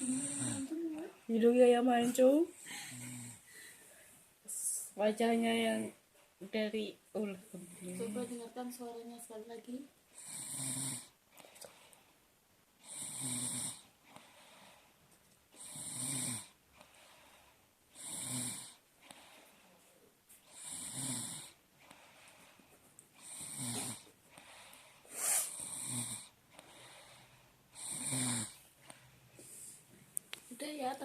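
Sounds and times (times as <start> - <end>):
person snoring: 0.0 - 0.9, 2.7 - 3.7, 10.2 - 11.1, 12.8 - 13.9, 15.6 - 16.6, 18.0 - 18.8, 20.5 - 21.6, 23.2 - 24.1, 25.1 - 26.3, 27.8 - 28.6
quiet breathing: 0.0 - 1.3, 2.1 - 5.0, 10.1 - 30.2.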